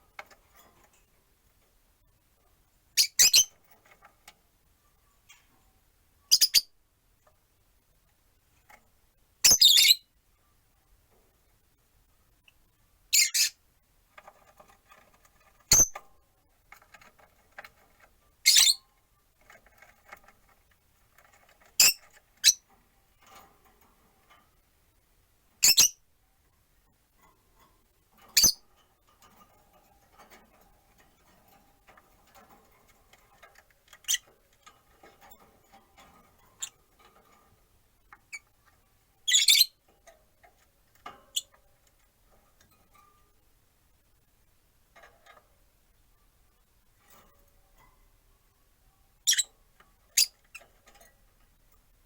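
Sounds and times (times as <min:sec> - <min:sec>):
faint soft bird sounds: 0:02.1 - 0:06.8, 0:09.4 - 0:16.2, 0:16.8 - 0:23.4, 0:25.6 - 0:27.7, 0:28.3 - 0:43.5, 0:46.0 - 0:52.0
lovebirds chirping: 0:39.3 - 0:39.8.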